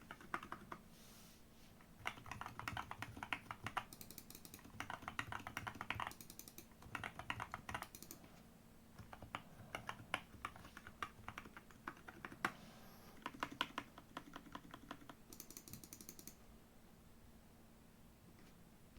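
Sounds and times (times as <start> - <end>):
mechanical keyboard typing: 0.0 - 0.8, 2.0 - 8.2, 9.0 - 12.5, 13.2 - 16.4.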